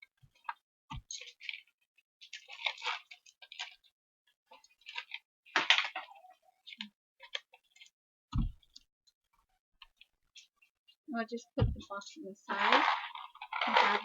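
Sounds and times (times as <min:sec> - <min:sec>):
dull thump: 0:08.4 - 0:08.6, 0:11.6 - 0:11.9.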